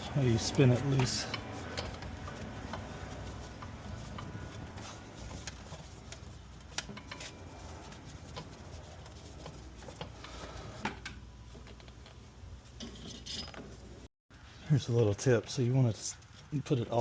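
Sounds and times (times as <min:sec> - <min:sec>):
hand tools clicking and knocking: 0:00.3 - 0:07.4.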